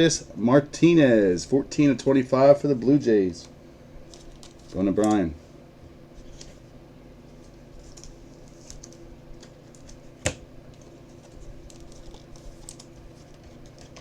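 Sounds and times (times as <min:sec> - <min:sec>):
steady low hum: 0:00.0 - 0:14.0
trading cards rustling: 0:04.0 - 0:05.3, 0:10.7 - 0:14.0.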